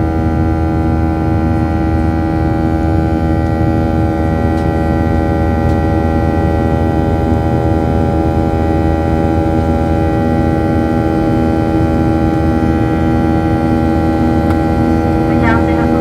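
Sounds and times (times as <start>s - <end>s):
jet engines running: 4.2s - 16.0s.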